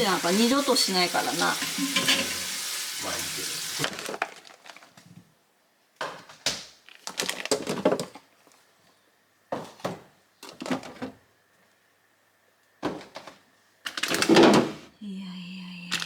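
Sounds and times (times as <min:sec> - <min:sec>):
objects knocking and clattering: 0:01.6 - 0:02.6, 0:07.1 - 0:08.3.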